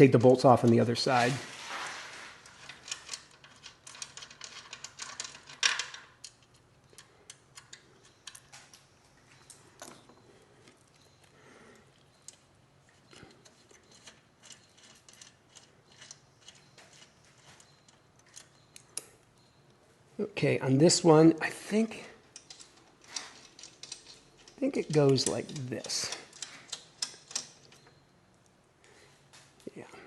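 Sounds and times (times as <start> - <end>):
metallic clicks of bolts and tools: 2.6 - 8.8, 12.0 - 19.2, 22.3 - 28.0.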